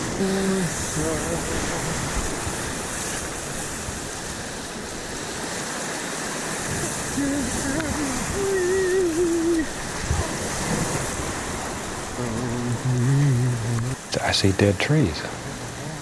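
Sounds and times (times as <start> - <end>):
whitewater rushing: 0.0 - 16.0
wordless voice: 12.2 - 16.0.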